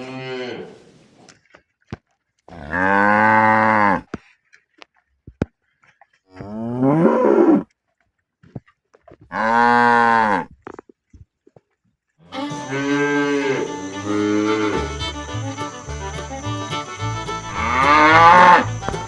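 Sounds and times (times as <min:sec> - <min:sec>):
cows mooing: 0:00.0 - 0:00.8, 0:02.5 - 0:04.1, 0:06.4 - 0:07.7, 0:09.3 - 0:10.5, 0:12.3 - 0:15.8, 0:17.4 - 0:18.9.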